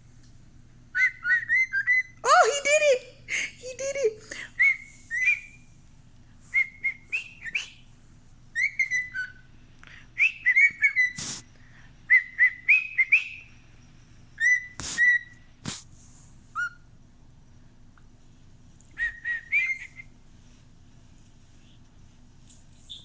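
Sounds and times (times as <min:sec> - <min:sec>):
cockatiel whistling a tune: 0:00.9 - 0:02.2, 0:04.6 - 0:05.5, 0:06.5 - 0:07.8, 0:08.6 - 0:09.4, 0:10.2 - 0:11.2, 0:12.1 - 0:13.5, 0:14.4 - 0:15.4, 0:16.5 - 0:16.8, 0:19.0 - 0:20.1.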